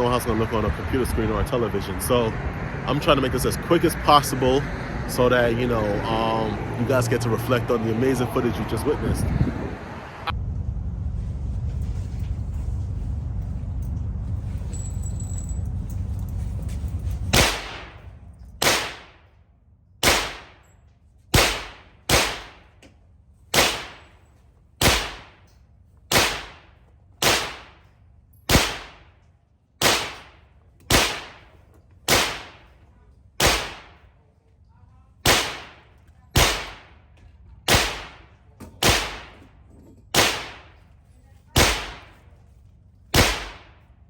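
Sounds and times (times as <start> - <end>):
handgun shots: 17.4 - 18.0, 18.6 - 19.2, 20.0 - 20.7, 21.3 - 22.7, 23.5 - 24.2, 24.8 - 25.5, 26.1 - 27.8, 28.5 - 29.1, 29.8 - 31.5, 32.1 - 32.7, 33.4 - 34.0, 35.2 - 35.8, 36.4 - 37.0, 37.7 - 39.5, 40.2 - 40.8, 41.6 - 42.2, 43.2 - 43.8.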